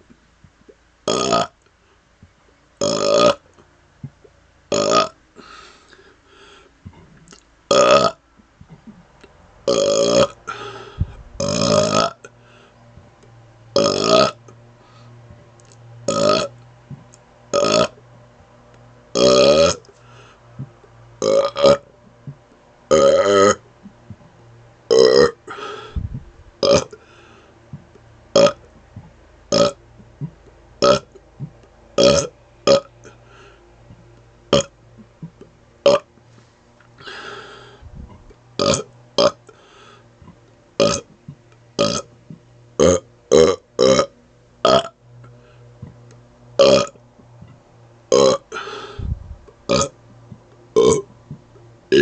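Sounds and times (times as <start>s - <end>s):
man burping: 1.1s - 1.6s, 2.8s - 3.4s, 4.7s - 5.2s, 7.0s - 8.2s, 9.7s - 10.8s, 11.4s - 12.3s, 13.8s - 14.4s, 16.1s - 16.5s, 17.5s - 18.0s, 19.2s - 19.9s, 21.2s - 21.8s, 22.9s - 23.6s, 24.9s - 26.0s, 26.6s - 27.0s, 28.4s - 28.6s, 29.5s - 29.8s, 32.0s - 32.9s, 34.5s - 34.7s, 35.4s - 36.1s, 38.2s - 39.4s, 40.8s - 41.1s, 42.8s - 44.1s, 44.7s - 45.0s, 46.6s - 47.0s, 48.1s - 49.0s, 49.7s - 49.9s, 50.8s - 51.1s.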